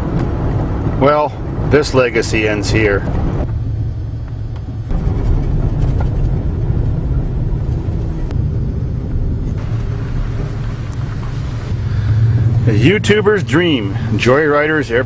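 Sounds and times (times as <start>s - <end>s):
vehicle engine rumbling: 0.0s - 15.0s.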